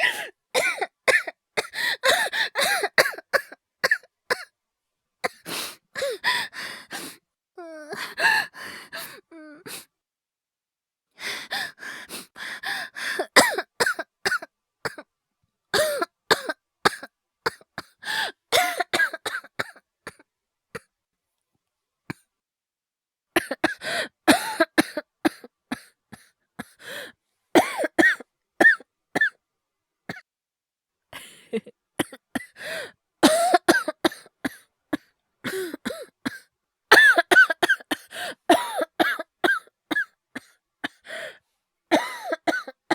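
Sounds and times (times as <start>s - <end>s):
person hacking coughs: 0.6s - 4.5s, 13.4s - 15.0s, 15.8s - 17.9s, 27.6s - 29.4s, 33.2s - 36.4s, 37.0s - 41.0s, 41.9s - 42.9s.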